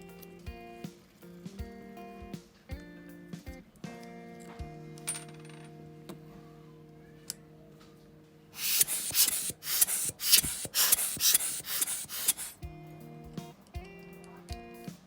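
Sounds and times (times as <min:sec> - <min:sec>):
soft guitar music: 0:00.0 - 0:15.0
rubbing strokes on lens part: 0:08.6 - 0:12.6.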